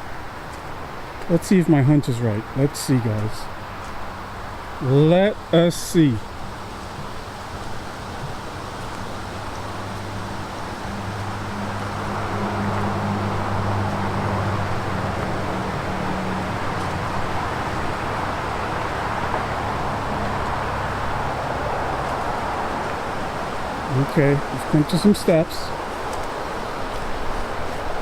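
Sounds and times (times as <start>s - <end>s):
road traffic noise: 0.0s - 28.0s
heavy vehicle engine hum: 4.8s - 24.8s.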